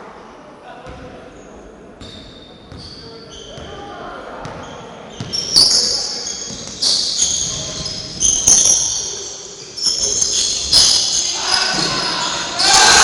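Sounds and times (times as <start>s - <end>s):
basketball bouncing with echo: 2.0s - 9.1s.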